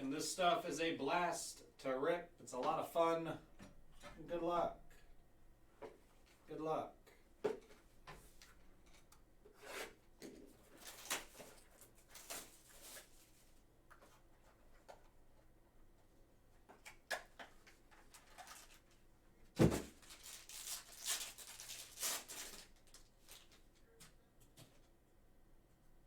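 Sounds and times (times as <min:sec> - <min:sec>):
thump: 0:19.6 - 0:19.9
card wrapper rustling: 0:19.9 - 0:23.7
wrapper tearing: 0:20.0 - 0:23.6.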